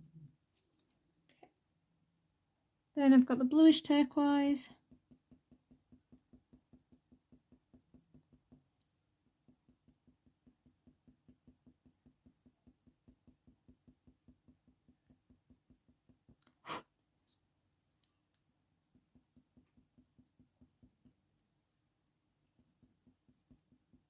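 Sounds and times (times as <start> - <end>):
pencil scratching on paper: 4.7 - 17.5, 18.8 - 21.4, 22.3 - 24.0.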